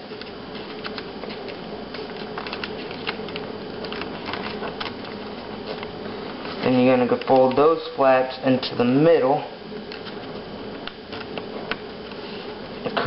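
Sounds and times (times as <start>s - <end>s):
faint steady hum: 0.0s - 13.0s
paper crackling and rustling: 0.1s - 7.5s.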